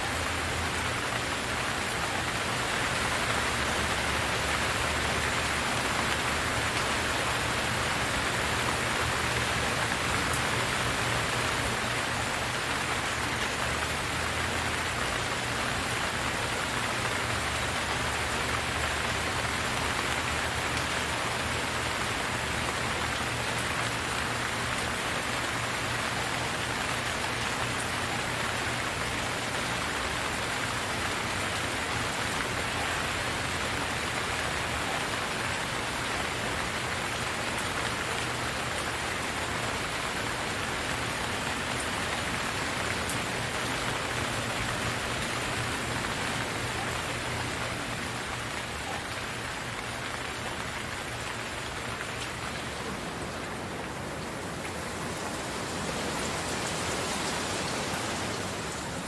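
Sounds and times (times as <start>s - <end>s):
steady rain pattering: 0.0s - 59.0s.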